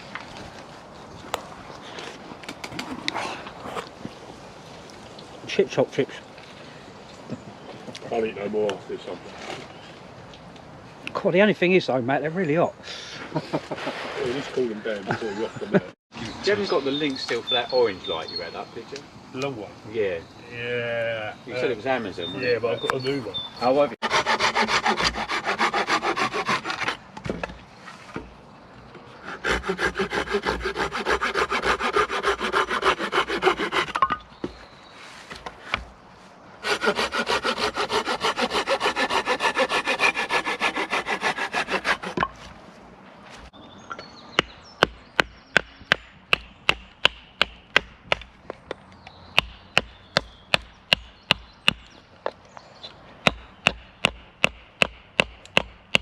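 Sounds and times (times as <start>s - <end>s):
hand saw cutting wood: 24.0s - 27.0s, 29.2s - 34.1s, 36.6s - 42.3s
sharp evenly spaced knocks: 43.9s - 52.4s, 53.2s - 56.0s.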